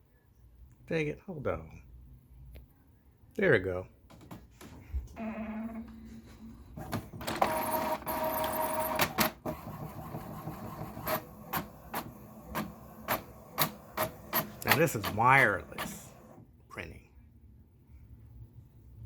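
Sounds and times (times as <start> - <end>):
printer motor whirring: 5.2 - 16.4
printer mechanism clicks: 10.9 - 16.1.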